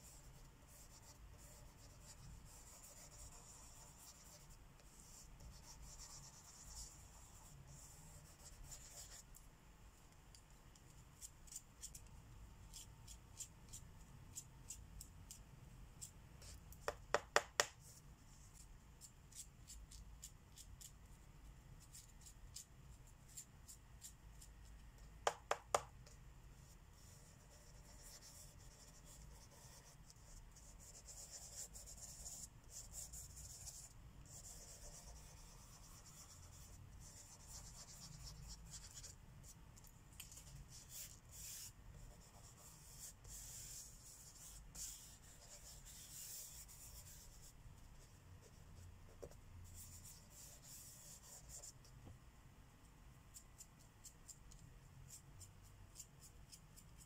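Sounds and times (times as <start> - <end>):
marker scratching on paper: 0.0 - 9.3, 10.8 - 15.4, 21.8 - 51.8.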